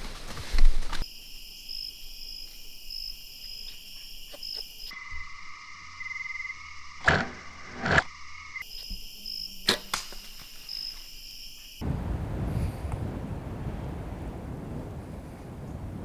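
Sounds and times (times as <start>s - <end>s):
crickets and insects chirping: 0.0s - 16.0s
sharp crack: 9.7s - 10.5s, 11.8s - 16.0s.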